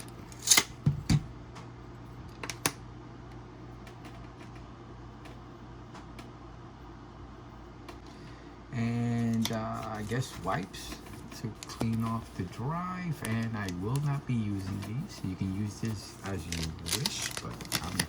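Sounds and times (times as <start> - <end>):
steady low hum: 0.0 - 18.0
packaging rustling: 9.3 - 18.0.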